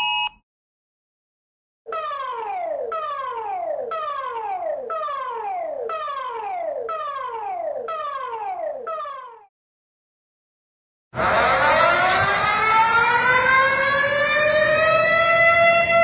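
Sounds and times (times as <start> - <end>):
falling electronic alert tone: 1.9 - 9.5.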